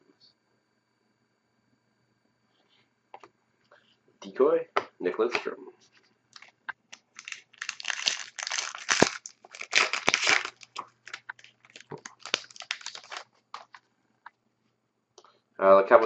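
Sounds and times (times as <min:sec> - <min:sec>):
card pack wrapper crinkling: 0:06.4 - 0:13.8
cards clicking and rustling: 0:06.4 - 0:13.8.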